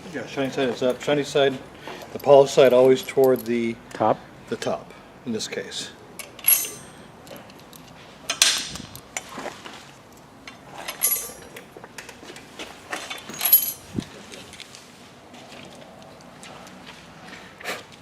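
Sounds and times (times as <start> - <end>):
metal parts clinking: 6.2 - 9.0, 10.1 - 11.6, 13.0 - 13.9
ringing metal clanks: 6.4 - 7.0.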